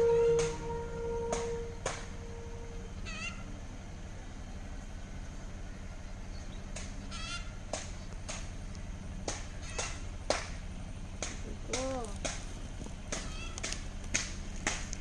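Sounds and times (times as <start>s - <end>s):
birds giving wavering calls: 0.0s - 3.6s, 5.6s - 7.6s, 9.5s - 10.1s, 13.2s - 13.8s
steady low hum: 0.0s - 15.0s.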